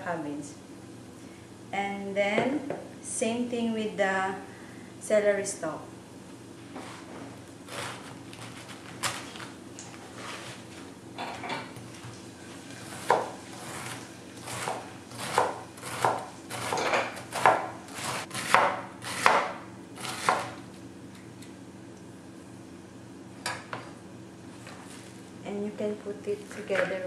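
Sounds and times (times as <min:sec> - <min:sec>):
knife chopping vegetables: 0:07.7 - 0:09.5, 0:12.8 - 0:20.6.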